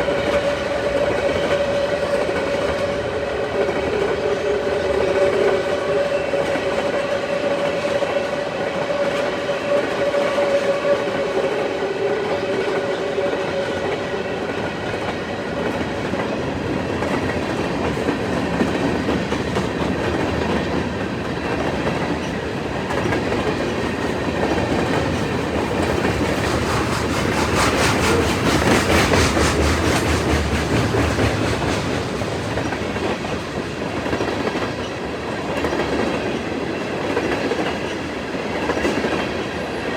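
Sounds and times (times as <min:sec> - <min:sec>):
train wheels clattering over rail joints: 0:15.0 - 0:39.4.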